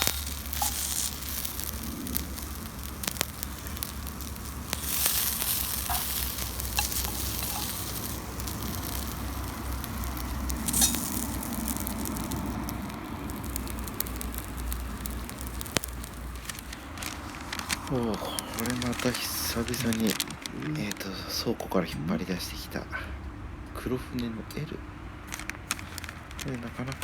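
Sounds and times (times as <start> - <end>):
food sizzling: 0.0 - 21.0
fire crackling and popping: 0.0 - 21.6, 25.2 - 27.0.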